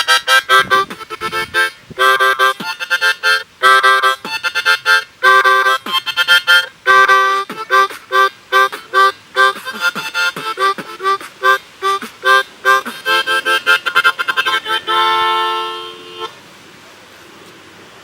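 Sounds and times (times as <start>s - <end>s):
beatbox hits through harmonica: 0.0s - 16.3s
harmonica chords: 0.0s - 16.3s.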